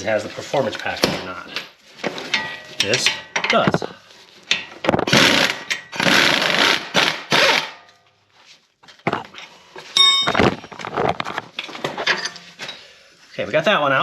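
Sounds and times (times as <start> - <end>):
impact wrench hammering: 4.5 - 7.9
short metallic ring: 10.0 - 10.4.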